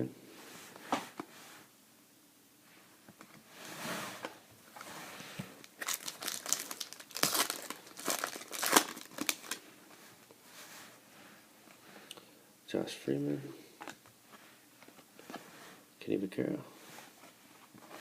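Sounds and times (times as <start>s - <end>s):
foil wrapper crinkling and tearing: 5.6s - 9.6s.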